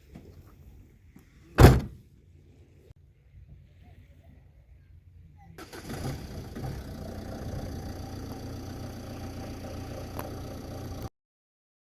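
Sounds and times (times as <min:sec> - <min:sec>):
engine idling: 0:05.6 - 0:11.1.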